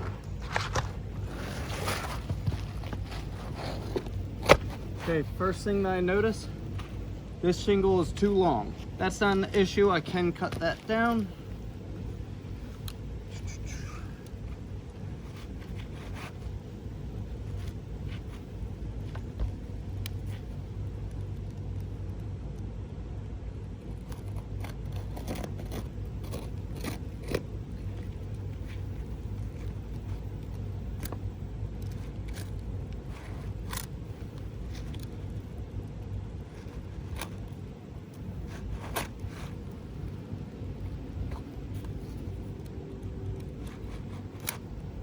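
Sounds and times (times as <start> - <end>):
blade scraping roof shingle: 0.0 - 5.8, 23.9 - 35.5, 36.4 - 42.6.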